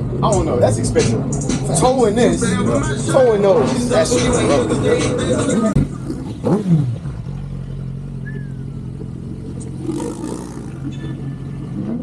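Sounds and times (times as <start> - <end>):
vehicle engine idling: 0.0 - 12.0.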